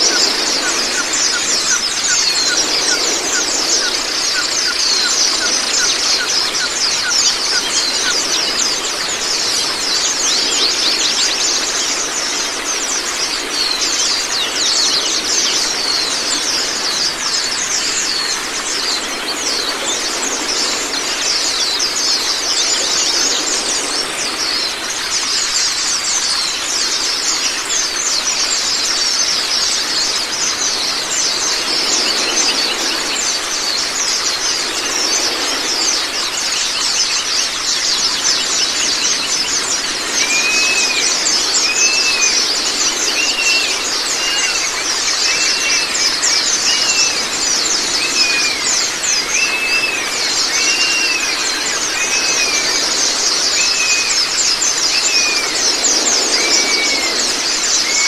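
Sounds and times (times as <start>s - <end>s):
birds chattering song: 0.0s - 58.0s
running water: 0.0s - 58.0s.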